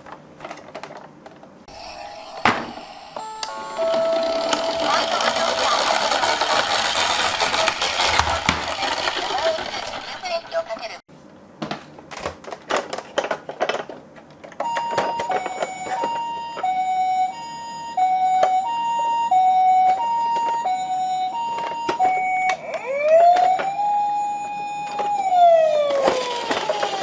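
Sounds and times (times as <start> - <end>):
toy electronic siren: 1.7 - 10.4, 14.6 - 27.0
toy clicks and knocks: 3.4 - 10.6, 25.9 - 27.0.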